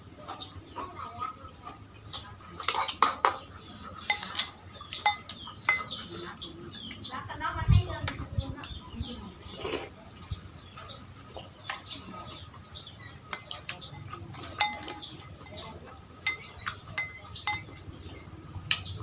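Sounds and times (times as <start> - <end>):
utensils clinking against bowl: 2.6 - 7.0, 10.8 - 18.3.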